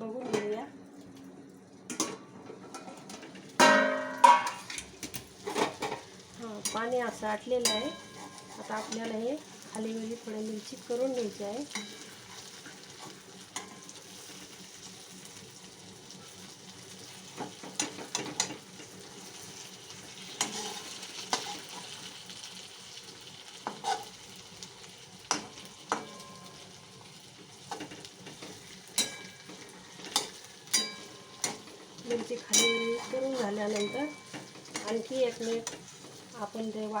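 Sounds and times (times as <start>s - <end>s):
vegetables sizzling in oil: 3.0s - 37.0s
spatula clacking against pan: 29.0s - 35.8s.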